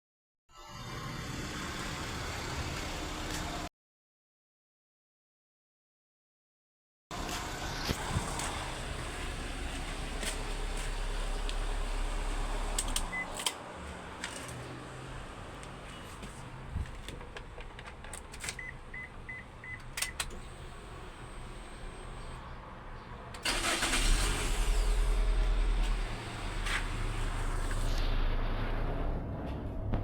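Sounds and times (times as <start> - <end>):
car engine running: 7.4 - 13.2, 19.1 - 22.5, 23.4 - 28.0
car engine switching off: 23.4 - 28.0.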